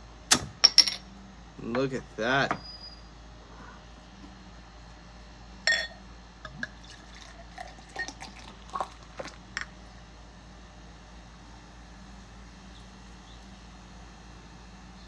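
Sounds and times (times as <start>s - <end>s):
glass clinking: 5.7s - 9.7s
drips: 6.5s - 9.5s
beer pouring into a cup: 6.5s - 9.7s.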